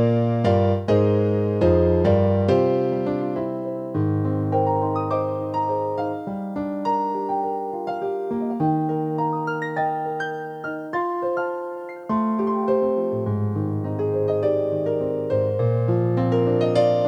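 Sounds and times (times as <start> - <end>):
slow keyboard piece: 0.0 - 17.0.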